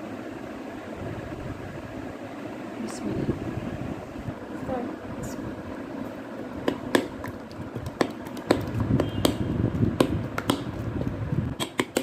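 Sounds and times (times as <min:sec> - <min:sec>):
clicks and taps: 0:06.6 - 0:12.0.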